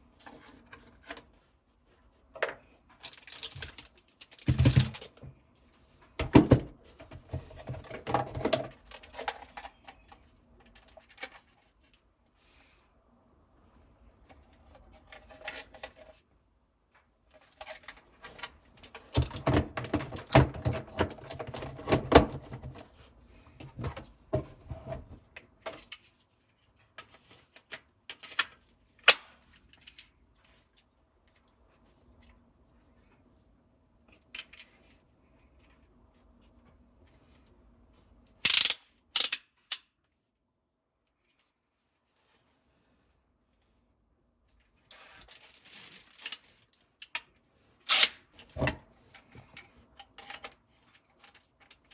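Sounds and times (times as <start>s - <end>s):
clattering and rustling packaging: 0.0s - 12.8s, 14.3s - 16.3s, 16.9s - 32.3s, 44.5s - 51.9s.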